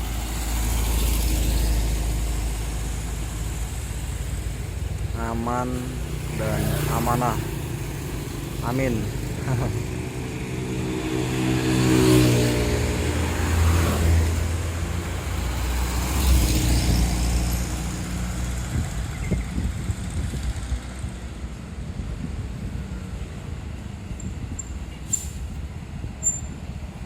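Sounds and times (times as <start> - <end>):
coach diesel engines rumbling past: 0.0 - 27.0.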